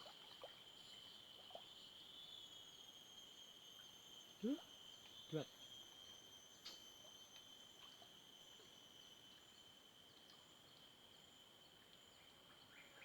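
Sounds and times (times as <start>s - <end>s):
insect high-pitched trill: 0.6s - 13.0s
faint chirps: 0.8s - 9.9s.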